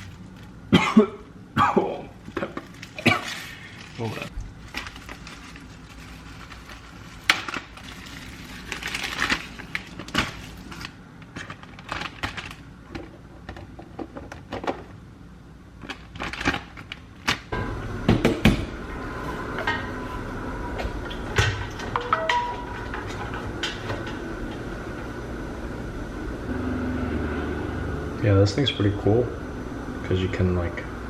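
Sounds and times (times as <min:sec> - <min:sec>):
steady hum: 0:00.0 - 0:31.0
food handling clicks and rustles: 0:02.1 - 0:15.0, 0:15.8 - 0:17.5.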